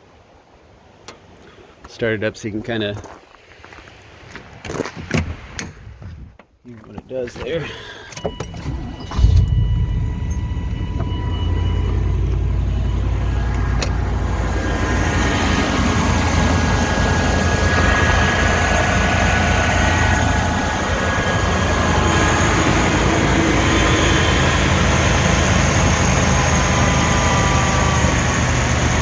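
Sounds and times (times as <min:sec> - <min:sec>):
car engine cranking and idling: 0:07.3 - 0:29.0
thin steady tone: 0:08.2 - 0:29.0.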